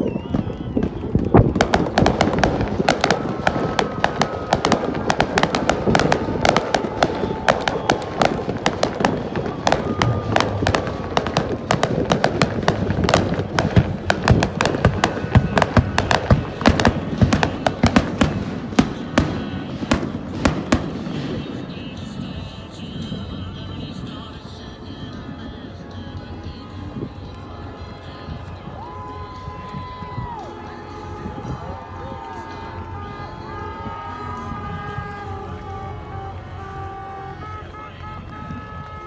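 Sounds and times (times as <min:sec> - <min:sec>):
fireworks bangs and cracks: 0:00.0 - 0:23.6.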